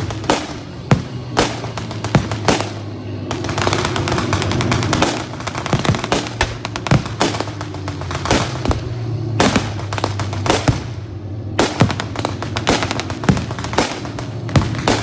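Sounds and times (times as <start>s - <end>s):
music: 0.0s - 9.2s
fireworks bangs and pops: 0.0s - 11.0s, 11.6s - 15.0s.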